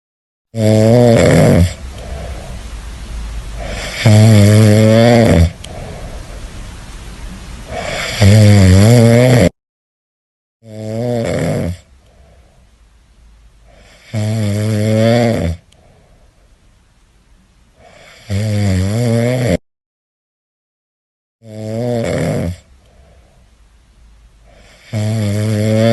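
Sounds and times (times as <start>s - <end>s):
cat snoring: 0.6s - 2.6s, 3.6s - 6.2s, 7.7s - 9.5s, 10.6s - 12.4s, 13.7s - 16.0s, 17.8s - 19.6s, 21.4s - 23.2s, 24.5s - 25.9s
quiet breathing: 1.7s - 8.2s, 11.8s - 13.0s, 13.6s - 14.4s, 15.6s - 18.3s, 22.6s - 23.8s, 24.4s - 25.9s.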